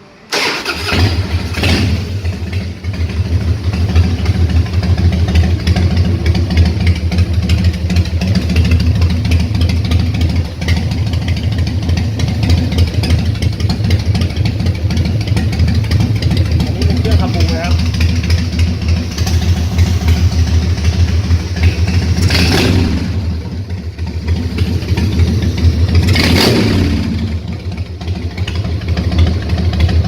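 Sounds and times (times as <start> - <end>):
motorcycle engine idling: 0.7 - 30.0.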